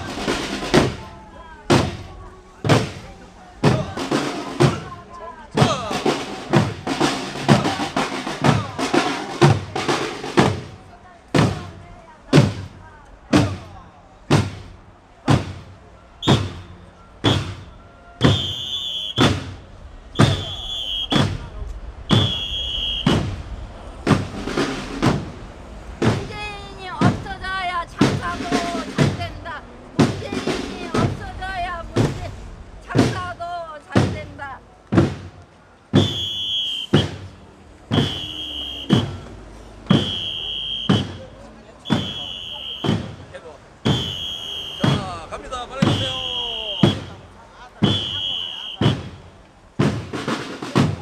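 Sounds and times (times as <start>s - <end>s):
big drum marching beat: 0.0s - 51.0s
shrill whistle blast: 16.0s - 23.4s, 35.9s - 37.3s, 37.9s - 39.3s, 39.9s - 43.1s, 43.8s - 45.1s, 45.8s - 47.2s, 47.8s - 49.1s.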